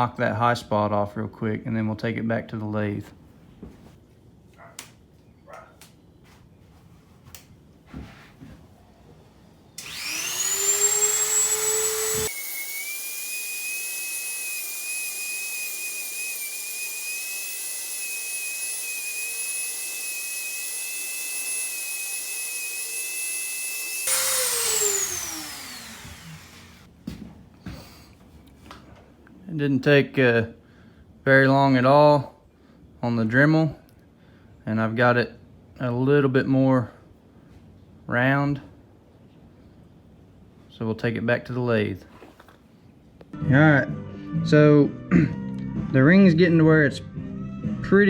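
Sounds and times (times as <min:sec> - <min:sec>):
rotary tool whining: 0:09.8 - 0:26.9.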